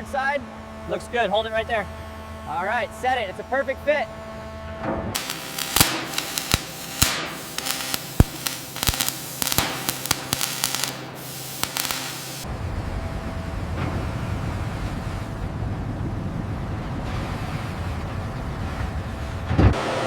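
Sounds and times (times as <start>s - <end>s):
spraying hiss with crackles: 5.2s - 12.5s.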